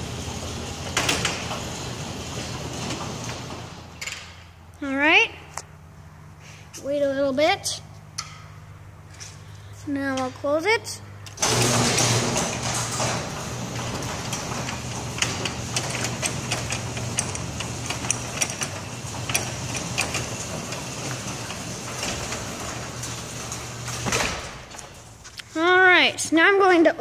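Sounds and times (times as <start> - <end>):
door clicking and rattling: 0.0 - 4.4, 11.3 - 25.1
garage door opener motor hum: 0.0 - 4.6, 11.1 - 25.3.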